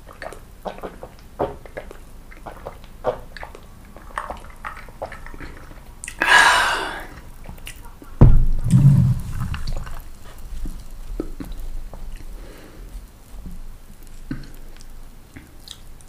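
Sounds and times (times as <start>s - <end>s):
muffled chewing: 0.0s - 6.2s, 9.5s - 16.0s
heavy low thump: 8.2s - 9.9s
wet mouth clicks: 14.3s - 15.9s.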